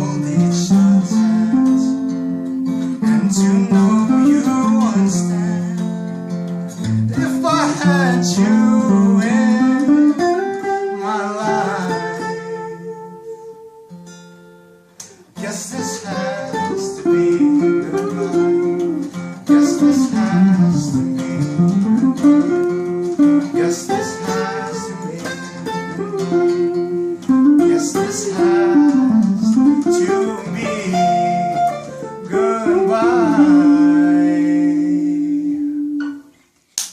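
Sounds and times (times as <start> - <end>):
person singing: 0.0 - 2.2, 7.0 - 13.7, 15.4 - 21.1, 22.4 - 36.3
acoustic guitar strumming: 0.0 - 36.4.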